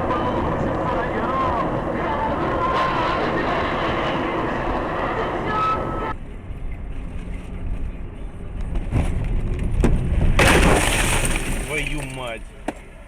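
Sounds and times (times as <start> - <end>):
road rumble: 0.0 - 13.0
vehicle engine: 0.0 - 13.0
loud vehicle crash impact: 10.3 - 12.3.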